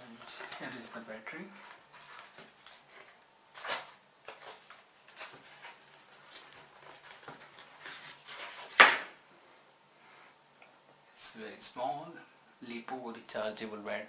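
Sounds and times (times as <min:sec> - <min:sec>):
plastic packaging rustling: 0:00.1 - 0:09.1
loud sharp snap: 0:08.8 - 0:09.2.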